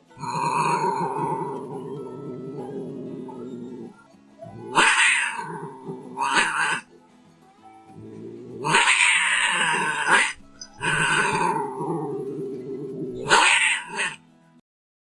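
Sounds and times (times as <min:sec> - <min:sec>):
cat yowling: 0:00.2 - 0:06.9, 0:08.0 - 0:14.2.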